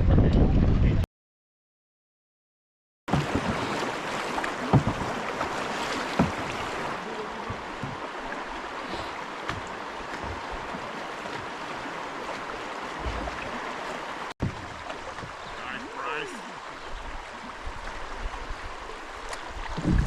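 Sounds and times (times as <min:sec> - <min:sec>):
river whitewater rushing: 0:03.2 - 0:19.2.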